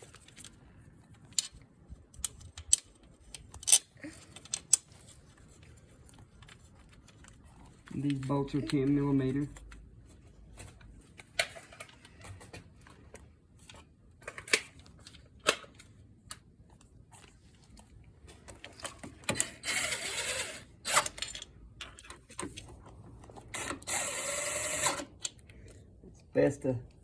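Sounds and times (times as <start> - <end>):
metal tools clicking and knocking: 2.2 - 4.9
ratchet wrench ratcheting: 19.4 - 21.4, 23.6 - 25.1.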